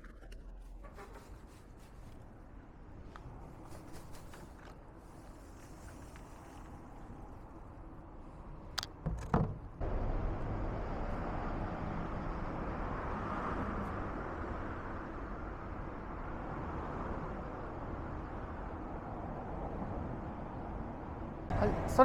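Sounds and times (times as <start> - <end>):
rushing outdoor background noise: 0.2 - 22.0
sharp knocks: 9.0 - 9.7.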